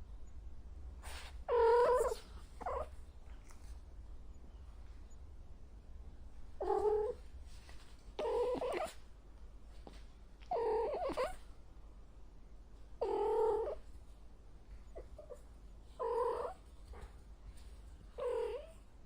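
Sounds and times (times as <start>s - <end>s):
cat meowing: 1.5s - 2.9s.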